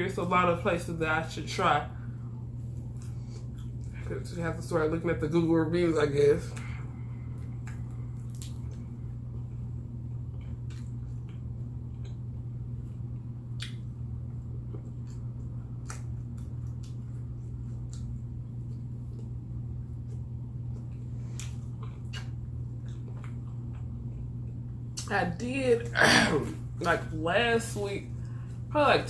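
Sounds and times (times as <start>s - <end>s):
steady low hum: 0.0s - 29.0s
person chewing food: 2.5s - 4.0s, 6.6s - 25.0s.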